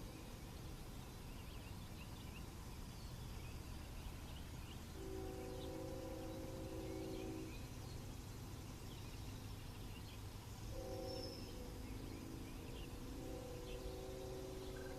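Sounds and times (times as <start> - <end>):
birds chirping: 0.0 - 14.9
low steady rumble: 0.0 - 14.9
distant locomotive air horn: 5.0 - 7.7, 10.7 - 14.9.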